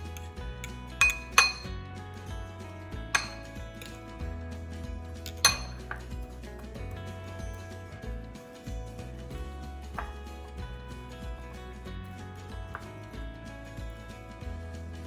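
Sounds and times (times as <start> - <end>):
background music: 0.0 - 15.0
utensil clinking against dishes: 0.6 - 1.8, 3.1 - 4.0, 5.2 - 6.2.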